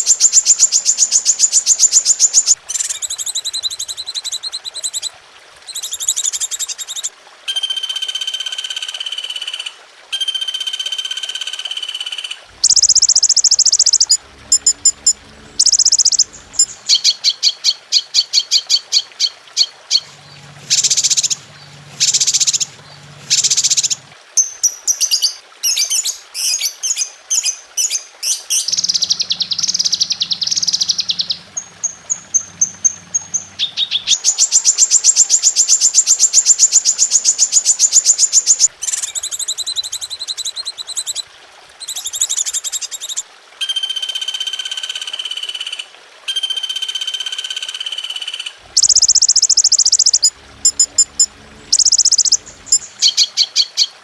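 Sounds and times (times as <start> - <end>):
songbirds singing: 0.0 - 5.1, 12.5 - 41.2, 48.7 - 54.0.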